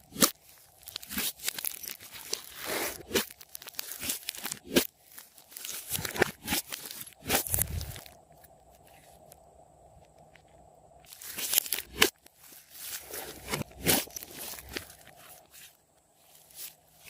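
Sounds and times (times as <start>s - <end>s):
slime crackling and crunching: 0.0s - 8.1s, 11.1s - 15.6s.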